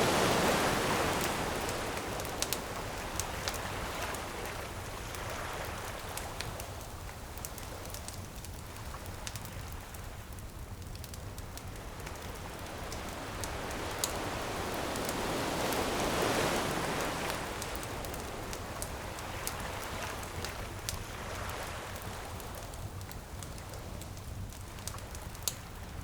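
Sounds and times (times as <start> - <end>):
wave breaking: 0.0 - 4.6, 12.6 - 20.3
surf washing: 0.0 - 7.7, 11.2 - 26.0
campfire crackling and popping: 0.0 - 26.0.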